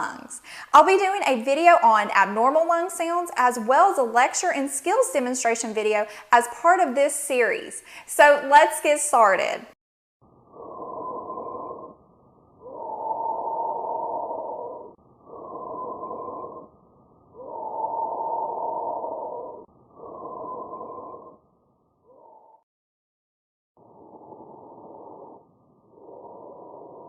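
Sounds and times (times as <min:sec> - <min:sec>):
breathing through stethoscope: 0:00.4 - 0:00.7, 0:07.8 - 0:08.1.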